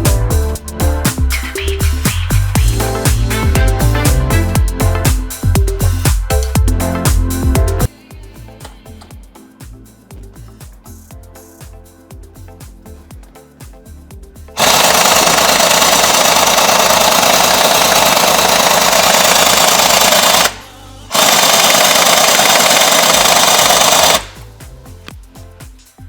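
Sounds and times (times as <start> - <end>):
background music: 0.0 - 26.0
pneumatic impact wrench hammering: 14.6 - 24.5.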